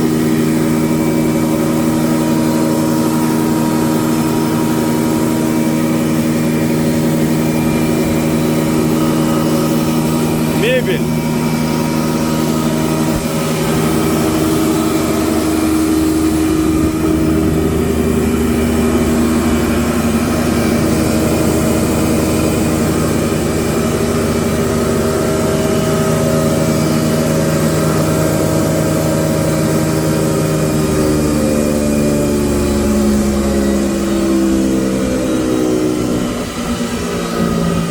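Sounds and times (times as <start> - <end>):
thickness planer humming: 0.0 - 37.9.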